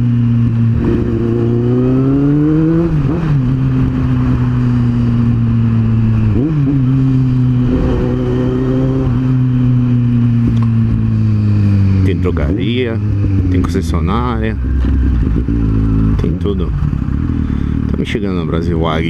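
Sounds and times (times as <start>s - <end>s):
motorcycle engine revving: 0.0s - 19.0s.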